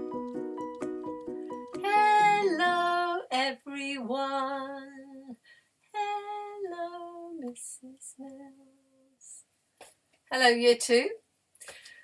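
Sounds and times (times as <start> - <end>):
woman singing long notes: 1.8 - 5.4.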